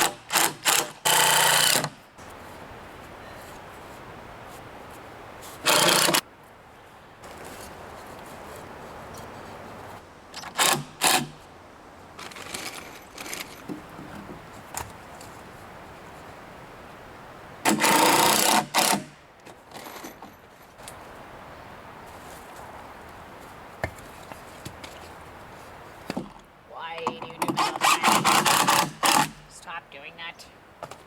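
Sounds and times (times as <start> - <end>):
handling noises of wood and tools: 0.0 - 16.4, 17.6 - 29.5
handheld power tool running: 5.7 - 6.2.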